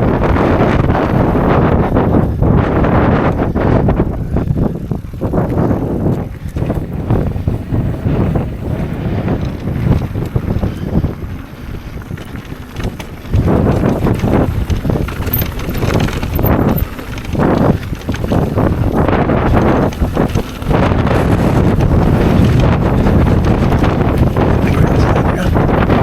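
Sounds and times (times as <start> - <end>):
gusty wind buffeting microphone: 0.0 - 26.0.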